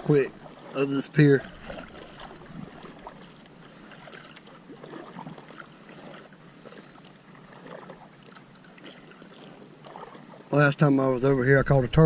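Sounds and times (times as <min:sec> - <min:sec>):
paddle splashing water: 0:00.0 - 0:11.0
water dripping off paddle: 0:01.4 - 0:10.4.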